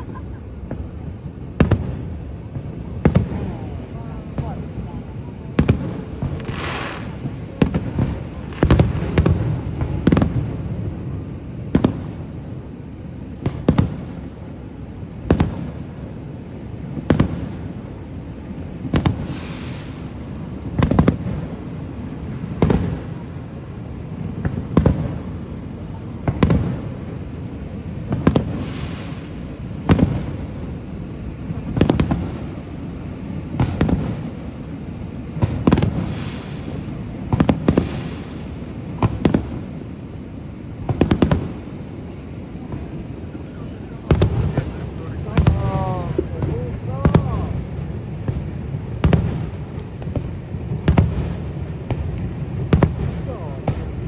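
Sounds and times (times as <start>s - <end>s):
steady low rumble: 0.0s - 9.8s
fireworks bursting with bangs: 0.0s - 54.0s
fireworks crackling trails: 0.0s - 54.0s.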